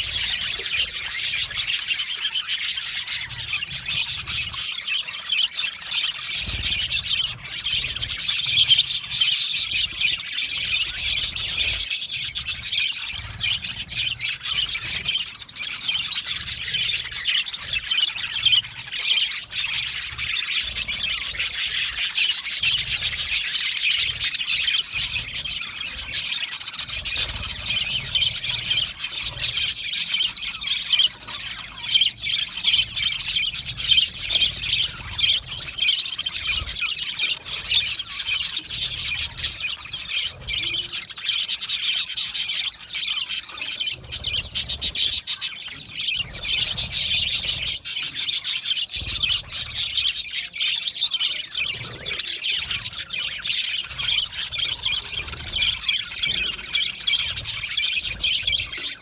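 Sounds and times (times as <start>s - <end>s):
budgerigars chirping and chattering: 0.0s - 59.0s.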